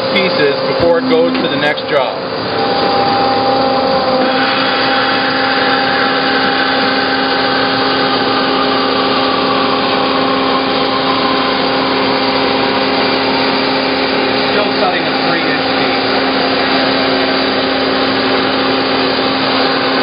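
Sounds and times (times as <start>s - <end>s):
bandsaw cutting metal: 0.8s - 20.0s.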